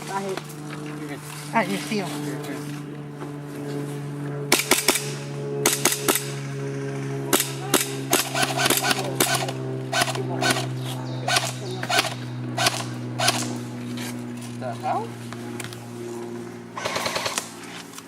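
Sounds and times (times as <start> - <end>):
steady low hum: 0.0 - 18.0
airsoft guns firing: 4.5 - 6.4, 7.3 - 10.6, 11.3 - 13.5, 16.8 - 17.6.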